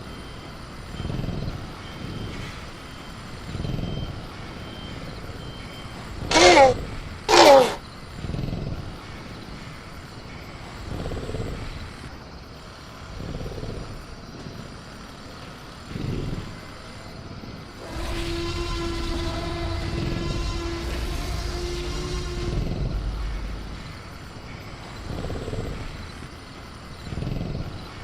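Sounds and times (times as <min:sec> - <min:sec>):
insect hum: 0:00.0 - 0:28.0
dinosaur screech: 0:06.3 - 0:07.8, 0:17.8 - 0:24.2
low growling: 0:06.3 - 0:08.6, 0:17.8 - 0:28.0
machine hum with low tone: 0:17.7 - 0:28.0.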